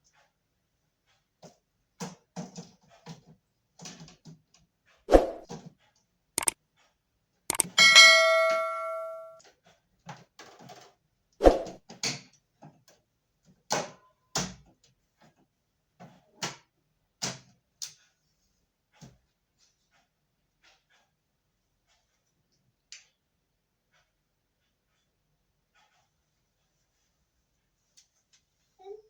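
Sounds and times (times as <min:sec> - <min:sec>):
struck metal ringing: 0:07.6 - 0:09.4.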